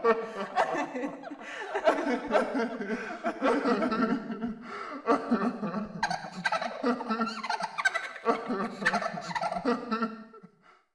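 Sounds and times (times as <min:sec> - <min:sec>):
crazed cackling laughter: 0:05.4 - 0:10.1.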